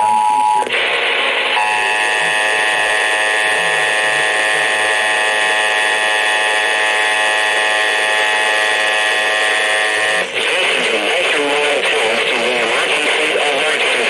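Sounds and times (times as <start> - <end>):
buzzing alert tone: 1.5 - 11.2.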